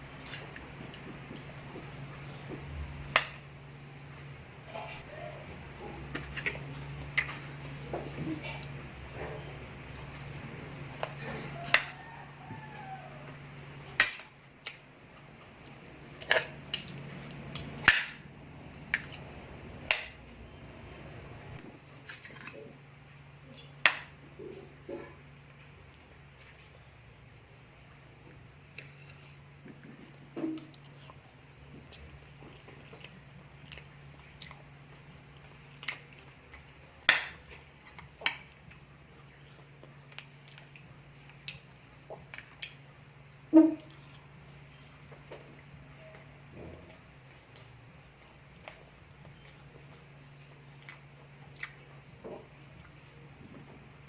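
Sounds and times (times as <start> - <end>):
low steady hum: 0.0 - 54.0
chewing and biting mouth sounds: 28.7 - 53.2.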